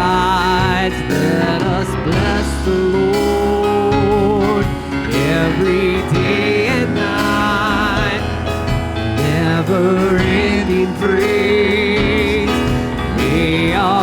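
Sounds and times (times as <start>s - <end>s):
worship band playing gospel song: 0.0s - 14.0s.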